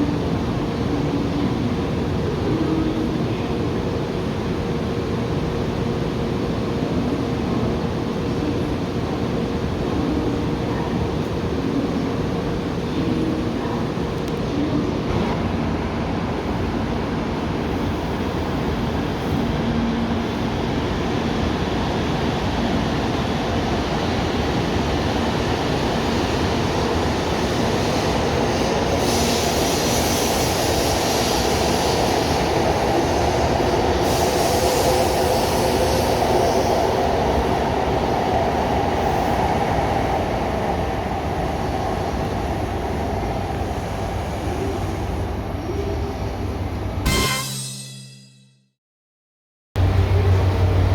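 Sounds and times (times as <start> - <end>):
hiss: 29.0 - 32.5, 34.0 - 36.8.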